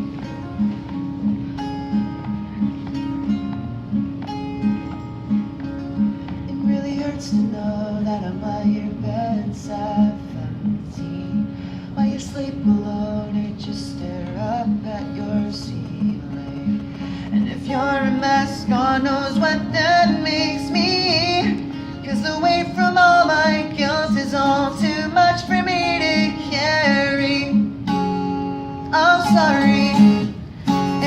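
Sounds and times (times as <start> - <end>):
acoustic guitar strummed: 0.0 - 31.0
person singing: 28.9 - 31.0.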